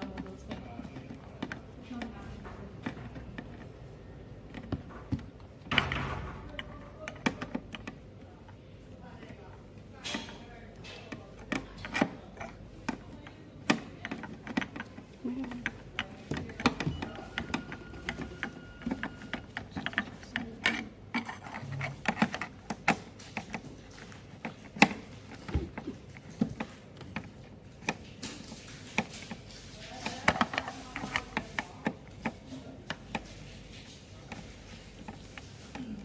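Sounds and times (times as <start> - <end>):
clicks and knocks of small parts: 10.0 - 36.0.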